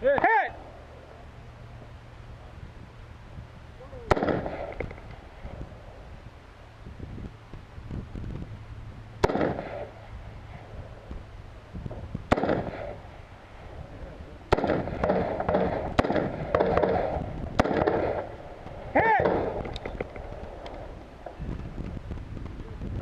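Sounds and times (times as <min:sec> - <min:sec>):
rifle shots with echo: 0:04.1 - 0:05.6, 0:09.2 - 0:10.7, 0:12.3 - 0:13.8, 0:14.5 - 0:20.6.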